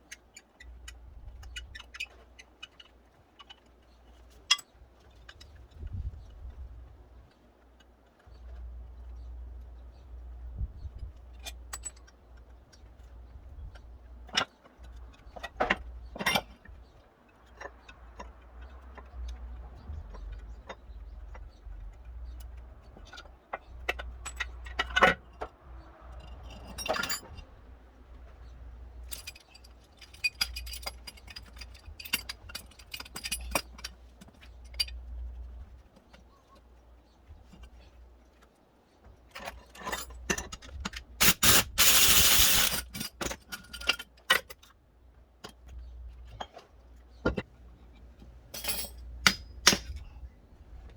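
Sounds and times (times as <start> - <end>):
metal tools clinking and tapping: 11.1 - 16.7, 26.1 - 27.5, 29.0 - 35.3, 39.3 - 44.7, 48.5 - 50.2
light metallic rattling: 39.3 - 44.7.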